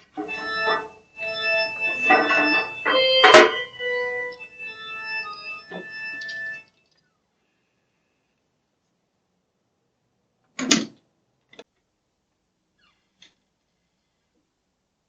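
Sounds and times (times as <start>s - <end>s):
organ-like keyboard music: 0.0s - 6.8s.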